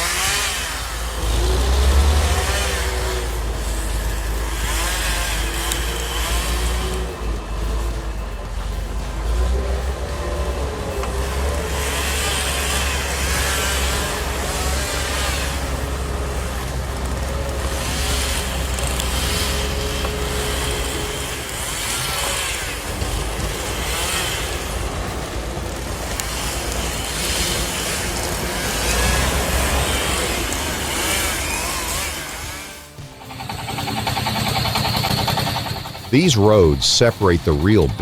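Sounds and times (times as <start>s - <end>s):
heavy vehicle engine rumbling: 0.0s - 38.0s
road noise: 0.0s - 38.0s.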